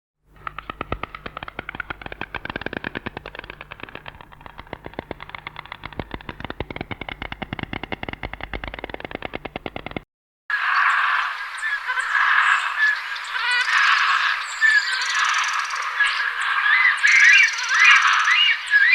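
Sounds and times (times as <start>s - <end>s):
fast even rattle of clicks: 0.3s - 10.1s.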